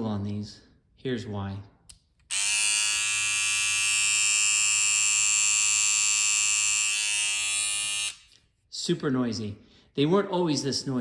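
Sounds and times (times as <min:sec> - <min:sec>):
hair trimmer buzzing: 0:02.3 - 0:08.4.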